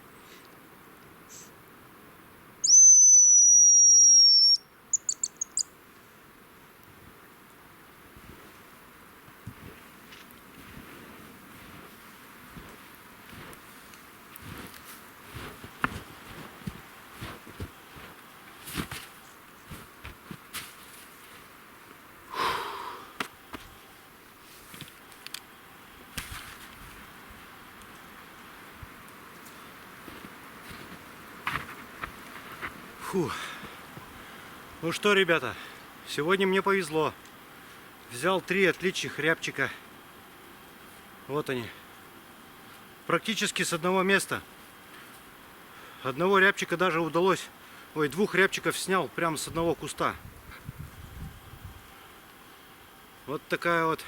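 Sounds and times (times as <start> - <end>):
grouse whistle call: 2.6 - 5.7
footsteps crunching in snow: 8.2 - 22.0, 26.0 - 27.5, 28.5 - 34.2
brief rustle: 26.1 - 27.0.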